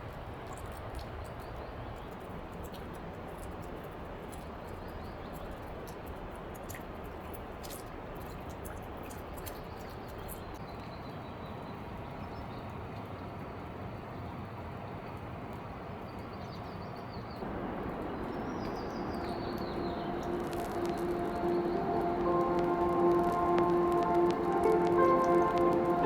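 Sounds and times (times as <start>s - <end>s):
outdoor background hiss: 17.4s - 26.0s.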